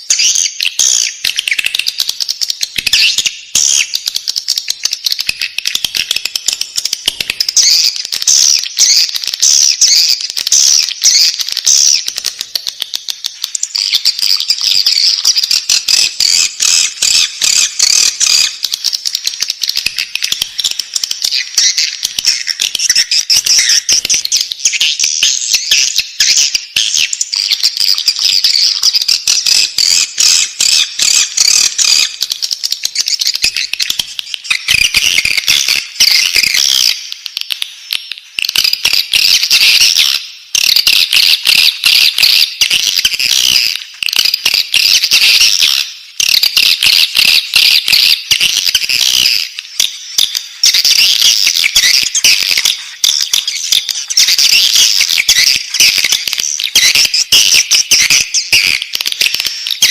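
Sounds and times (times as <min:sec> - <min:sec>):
chicks chirping: 0:26.8 - 0:37.1, 0:46.4 - 0:59.9.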